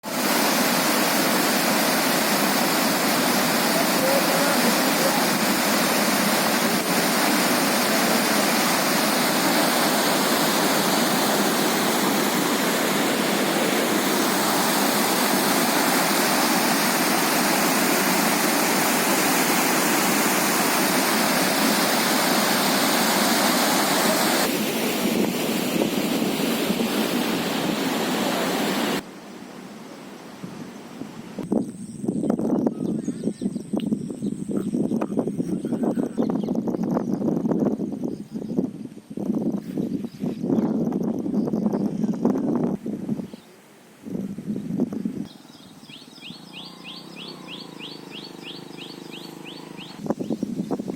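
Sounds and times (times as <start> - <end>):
floodwater rushing: 0.0 - 29.1, 46.6 - 50.1.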